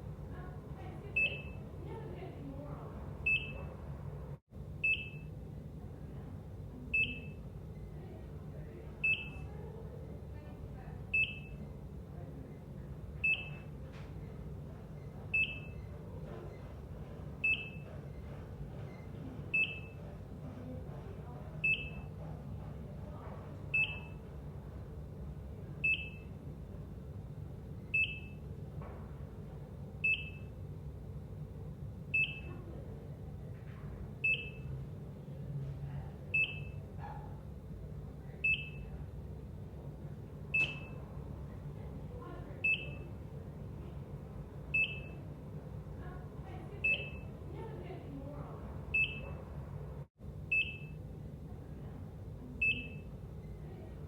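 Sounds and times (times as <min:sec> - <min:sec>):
heart monitor beeping: 0:01.2 - 0:01.7, 0:03.2 - 0:03.7, 0:04.8 - 0:05.4, 0:06.9 - 0:07.6, 0:09.0 - 0:09.5, 0:11.1 - 0:11.7, 0:13.2 - 0:14.4, 0:15.0 - 0:16.6, 0:17.4 - 0:20.3, 0:21.6 - 0:22.7, 0:23.6 - 0:24.3, 0:25.8 - 0:26.4, 0:27.8 - 0:28.5, 0:30.0 - 0:30.6, 0:32.1 - 0:32.5, 0:34.2 - 0:34.7, 0:36.3 - 0:37.3, 0:38.4 - 0:38.9, 0:40.4 - 0:41.1, 0:42.6 - 0:43.2, 0:44.7 - 0:45.2, 0:46.8 - 0:47.4, 0:48.9 - 0:49.4, 0:50.5 - 0:51.0, 0:52.6 - 0:53.2.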